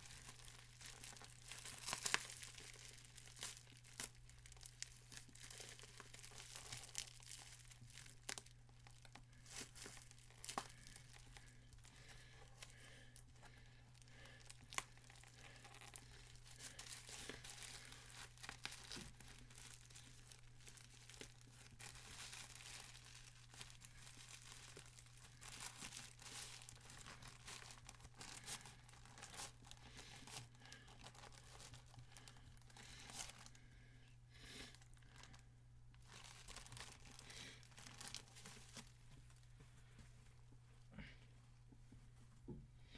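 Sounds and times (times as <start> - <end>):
packaging torn and crinkled: 0.0 - 11.5, 14.4 - 33.5, 36.0 - 39.5
faint crackles and rustles: 0.0 - 33.7, 34.4 - 42.9.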